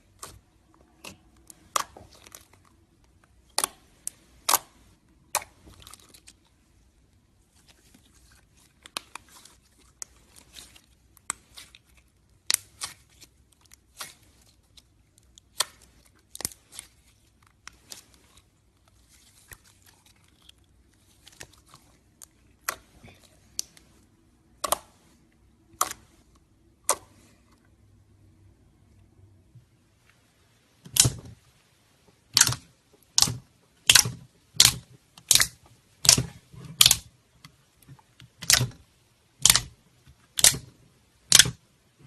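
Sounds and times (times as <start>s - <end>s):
slime popping and crackling: 32.3s - 37.1s, 39.4s - 40.7s, 41.3s - 41.6s.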